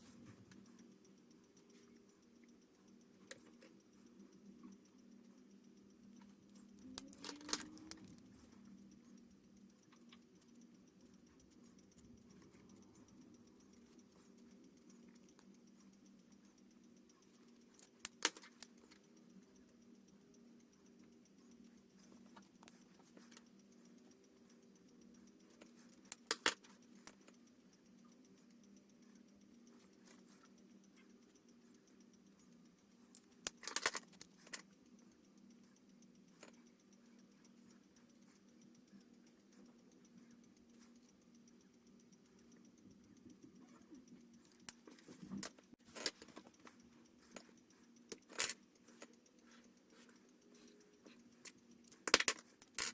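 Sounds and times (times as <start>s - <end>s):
sharp clicks: 0.0s - 52.9s
steady low hum: 0.0s - 52.9s.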